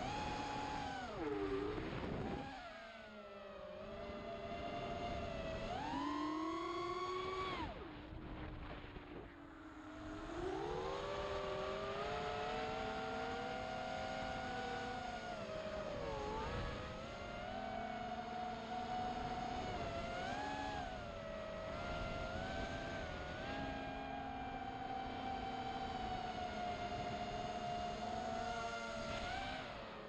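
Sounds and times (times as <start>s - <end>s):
quadcopter motors whining: 0.0s - 29.8s.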